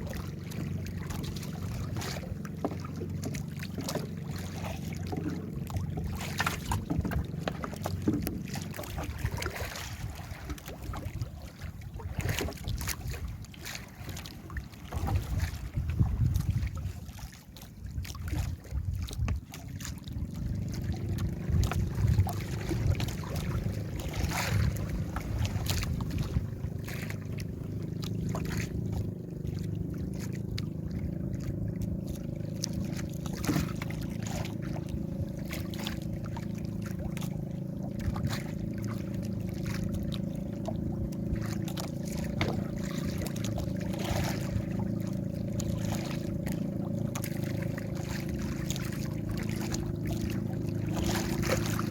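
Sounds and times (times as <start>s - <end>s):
boat engine humming: 0.0s - 51.9s
wind buffeting microphone: 14.8s - 17.1s, 17.7s - 37.3s.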